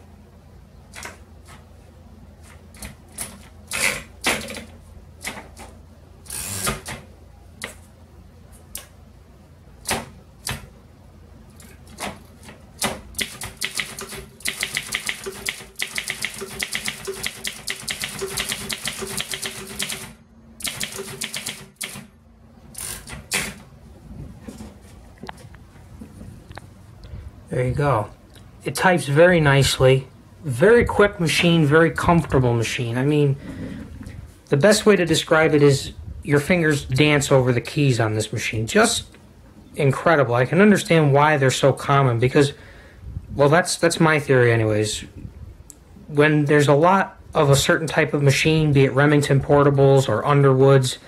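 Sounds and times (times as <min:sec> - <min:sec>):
manual typewriter keystrokes: 0:11.8 - 0:22.1.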